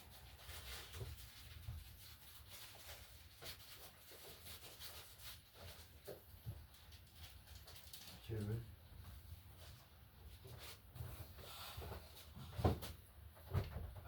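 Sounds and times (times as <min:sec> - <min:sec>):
faint clicks and rustles: 0:00.0 - 0:14.0.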